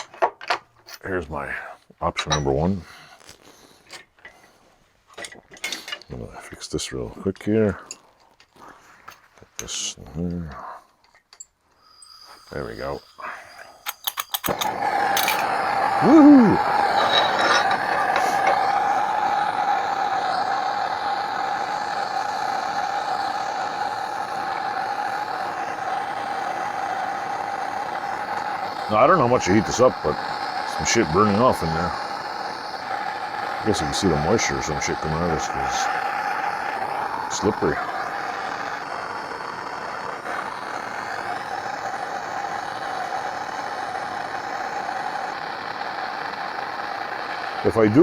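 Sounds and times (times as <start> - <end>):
constant mid-pitched tone: 11.3 - 19.6
torch flame hissing: 11.7 - 48.0.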